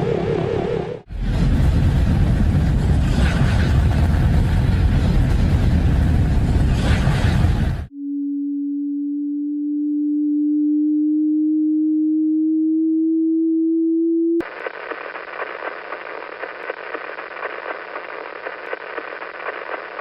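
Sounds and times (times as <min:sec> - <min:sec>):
pure tone rising in pitch: 0:07.9 - 0:14.4
crackling static hiss: 0:14.4 - 0:20.0.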